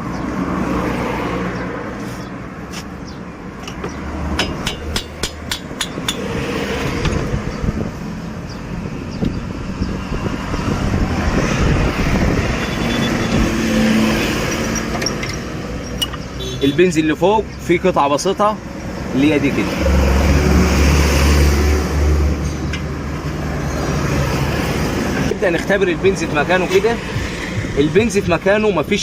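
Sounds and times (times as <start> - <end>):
street traffic noise: 0.0 - 29.0
metallic clicks and taps: 14.9 - 16.3.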